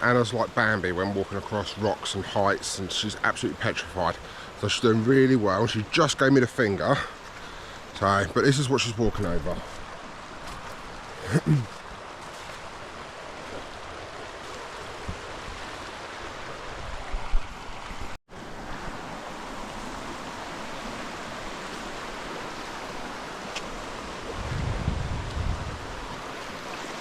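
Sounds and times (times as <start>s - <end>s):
water rushing over rocks: 0.0s - 27.0s
wind rumble on microphone: 23.8s - 26.6s.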